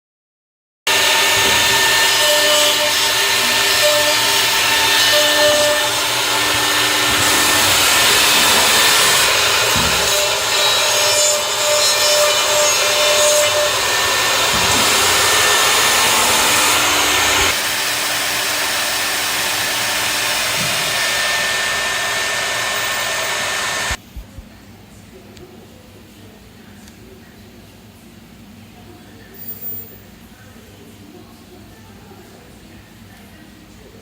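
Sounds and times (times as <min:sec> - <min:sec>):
router cutting wood: 0:00.9 - 0:24.0.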